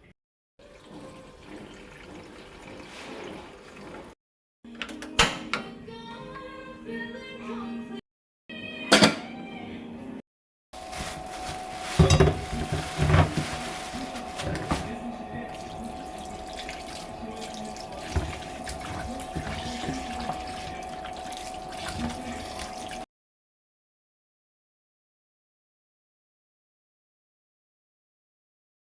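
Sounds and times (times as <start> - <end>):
water running from a tap: 0.6 - 4.2, 10.8 - 23.0
knocks and clatter in sink: 10.9 - 23.0.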